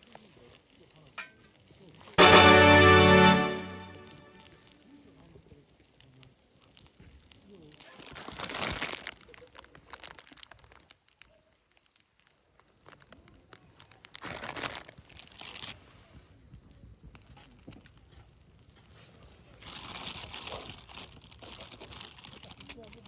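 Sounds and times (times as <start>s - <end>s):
plastic packaging crinkling: 14.2s - 15.6s.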